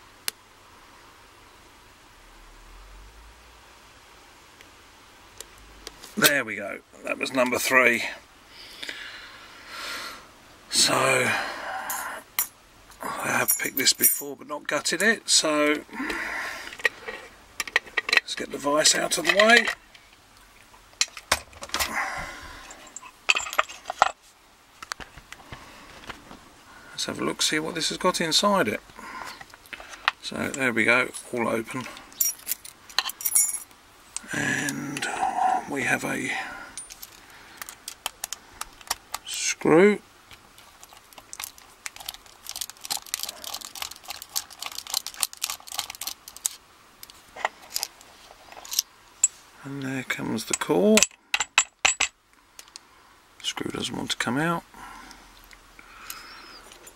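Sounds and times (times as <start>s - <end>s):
screwdriver clicking and scraping metal: 40.8s - 47.9s.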